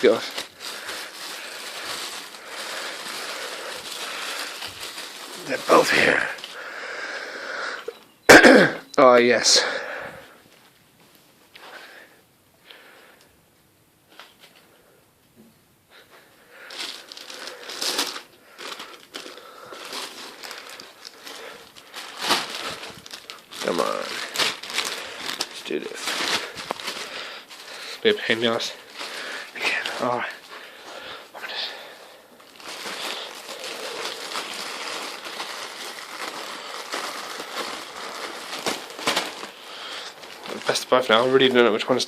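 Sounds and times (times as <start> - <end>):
sharp crackle: 0.0 - 6.6, 16.7 - 30.5, 32.4 - 41.1
packaging wrap crinkling: 0.0 - 6.8, 16.5 - 42.0.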